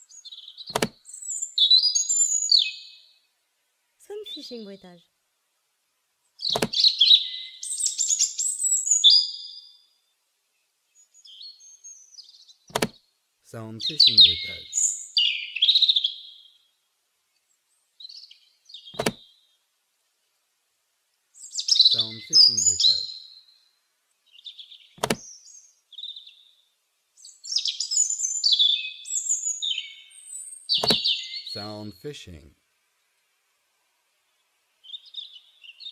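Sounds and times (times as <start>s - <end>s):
robin singing: 0.0s - 3.3s, 6.3s - 9.9s, 10.9s - 19.6s, 21.3s - 33.4s, 34.2s - 35.9s
sharp click: 0.7s - 1.0s, 6.5s - 6.8s, 12.7s - 13.0s, 19.0s - 19.2s, 25.0s - 25.2s, 30.8s - 31.0s.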